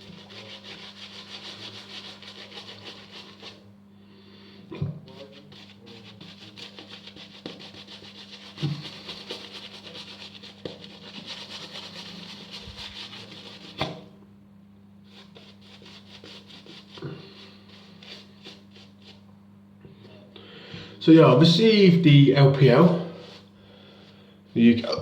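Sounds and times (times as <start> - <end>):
shaving brush swishing lather: 0.0 - 3.6, 4.8 - 14.0, 15.1 - 19.2, 22.5 - 23.5.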